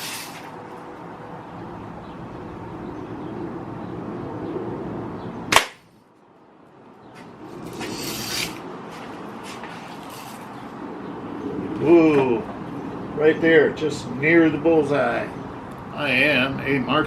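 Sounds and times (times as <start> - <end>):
bb gun firing: 5.5 - 5.9.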